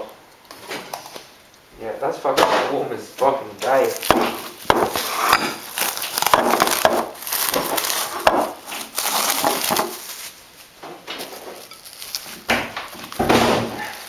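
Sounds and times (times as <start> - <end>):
plastic containers clattering: 3.6 - 14.0.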